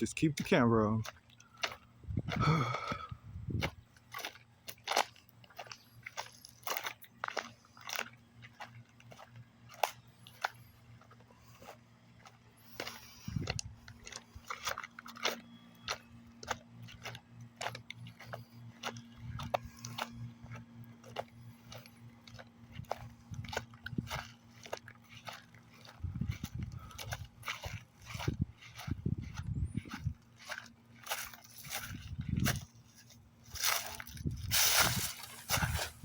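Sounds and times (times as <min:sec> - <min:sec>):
footsteps crunching on dry ground: 0:00.0 - 0:36.0.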